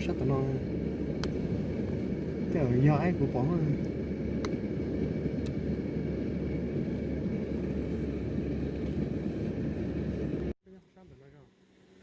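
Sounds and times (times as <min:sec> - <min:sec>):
steady low rumble: 0:00.0 - 0:10.6.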